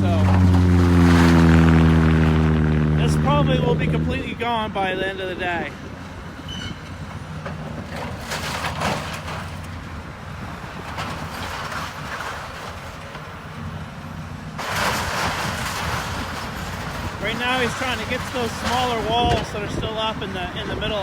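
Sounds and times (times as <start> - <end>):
rubble breaking and falling: 0.0 - 2.4, 7.5 - 9.9, 14.6 - 21.0
diesel engine running: 0.0 - 21.0.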